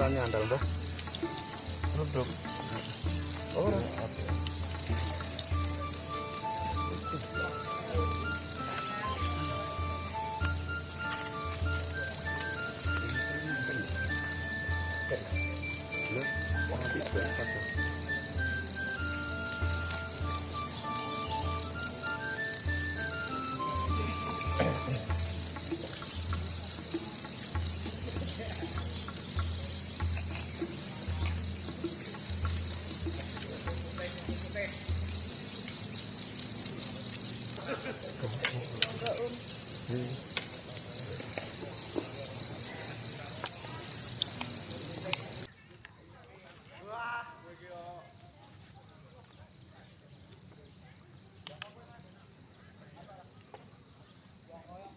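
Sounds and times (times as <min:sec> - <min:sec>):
background music melody: 0:00.0 - 0:45.5
insect chorus trilling: 0:00.0 - 0:54.9
low beat: 0:22.7 - 0:35.5.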